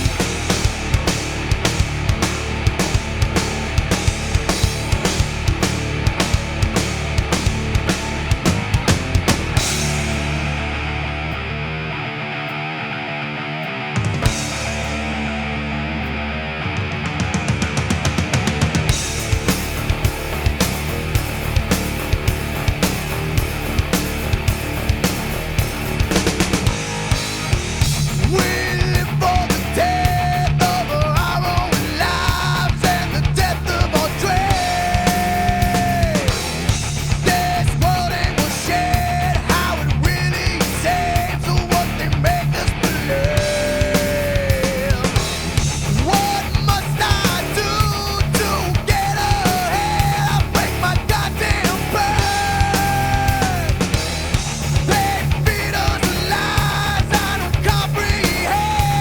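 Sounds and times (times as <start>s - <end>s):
nu metal song: 0.0s - 59.0s.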